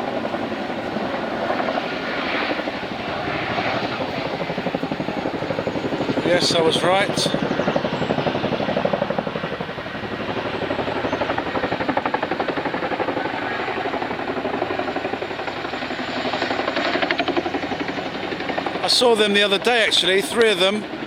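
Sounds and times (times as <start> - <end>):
helicopter rotor chopping: 0.0 - 21.0.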